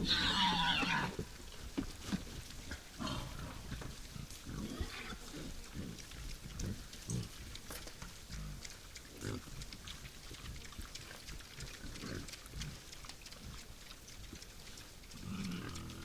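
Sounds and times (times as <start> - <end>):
wild boar grunting: 2.6 - 13.7, 15.2 - 16.0.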